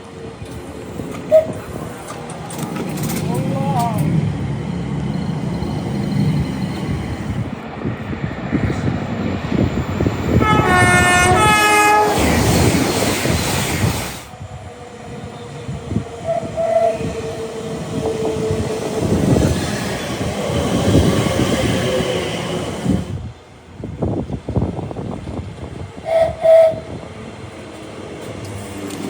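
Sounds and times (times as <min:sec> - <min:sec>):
train rushing past: 0:00.0 - 0:29.0
two-tone train horn: 0:10.4 - 0:12.2, 0:26.0 - 0:26.9.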